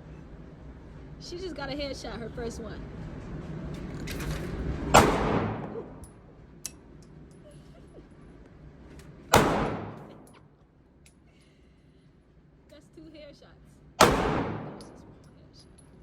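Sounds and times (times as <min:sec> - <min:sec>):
pistol shots with echo: 0:05.0 - 0:06.0, 0:09.3 - 0:10.3, 0:14.0 - 0:15.3.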